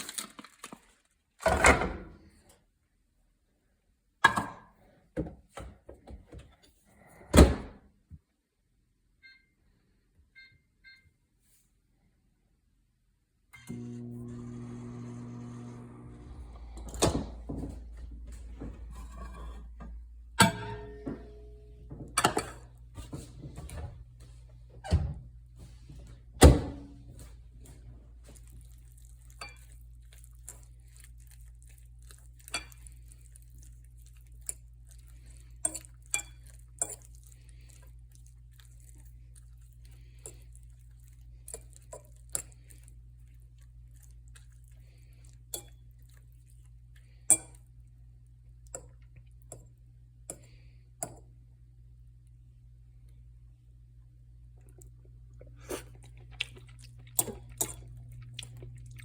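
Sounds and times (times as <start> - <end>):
dishes and utensils clinking: 16.8 - 23.2.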